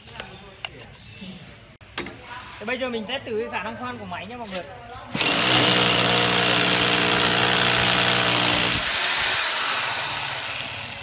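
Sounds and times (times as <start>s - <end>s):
hammer drill drilling into wall: 5.2s - 11.0s
motor winding down: 5.2s - 11.0s.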